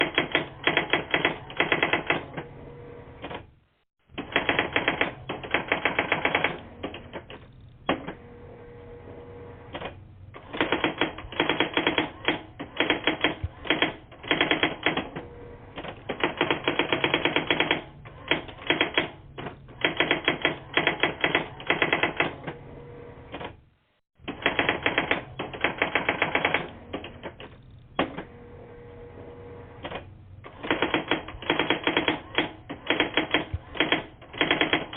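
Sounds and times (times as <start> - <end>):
typewriter-like clacking: 0.0 - 2.3, 4.2 - 8.1, 9.7 - 15.1, 15.8 - 19.2, 19.8 - 22.4, 24.3 - 27.4, 29.8 - 34.9.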